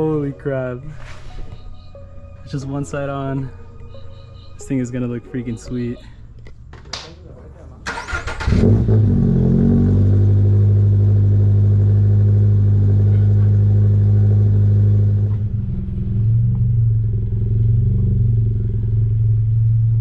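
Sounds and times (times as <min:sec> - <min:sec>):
car engine idling: 0:10.0 - 0:20.0.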